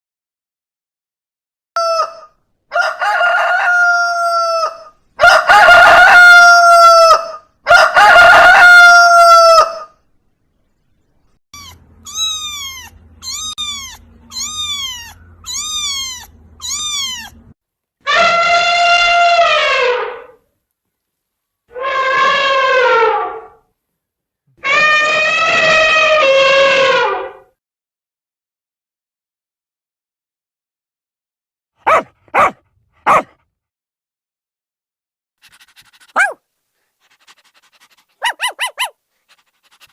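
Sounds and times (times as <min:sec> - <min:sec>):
rooster crowing: 0:01.8 - 0:10.0
cat meowing: 0:11.6 - 0:17.6.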